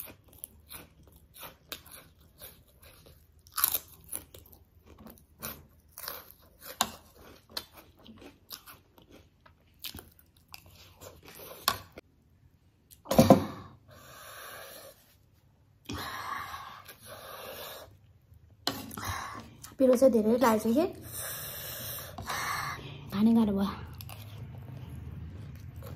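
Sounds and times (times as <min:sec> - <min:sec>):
crunchy chewing of snacks: 0:00.0 - 0:12.0, 0:23.8 - 0:25.9.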